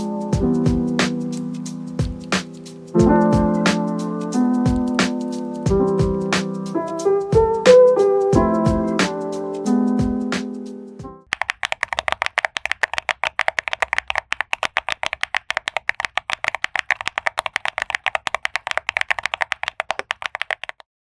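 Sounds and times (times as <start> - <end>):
typing on mechanical keyboard: 0.4 - 3.8, 4.6 - 5.8, 11.3 - 20.9.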